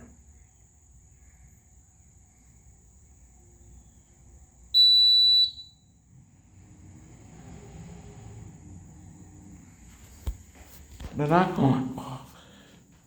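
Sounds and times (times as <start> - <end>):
smoke alarm beep: 4.7 - 6.0.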